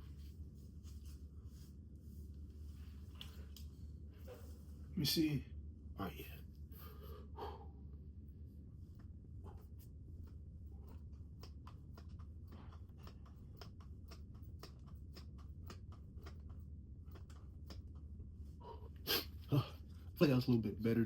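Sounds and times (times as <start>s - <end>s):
clothing rustle: 0.0s - 4.9s
steady low hum: 0.0s - 21.0s
quick breathing: 6.6s - 7.9s, 8.9s - 20.2s.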